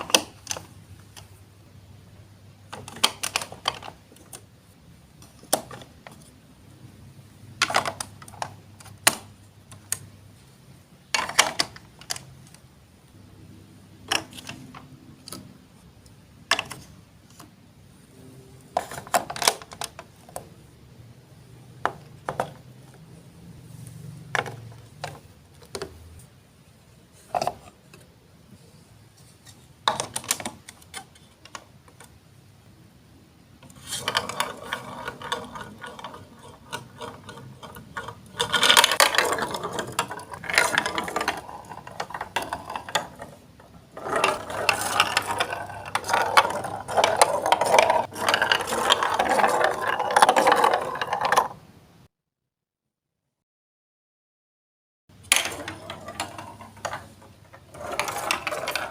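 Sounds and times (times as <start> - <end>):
marbles rattling through plastic track: 33.7 - 51.6, 55.3 - 58.9.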